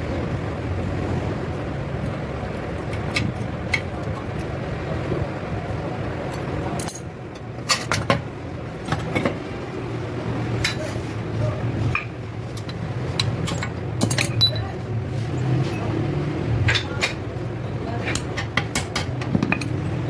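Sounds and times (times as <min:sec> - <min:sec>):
metal tools clinking: 0:11.9 - 0:14.8.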